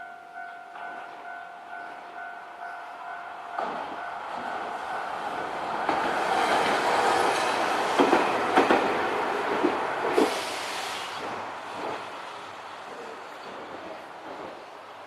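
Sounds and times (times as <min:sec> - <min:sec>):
tram running noise: 0:00.0 - 0:15.0
tram wheels clacking over rails: 0:03.5 - 0:15.0.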